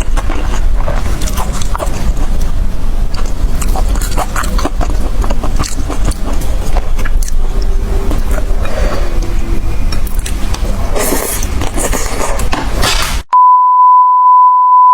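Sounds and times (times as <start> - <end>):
steady low rumble: 0.0 - 12.8
animal chewing food: 0.0 - 13.2.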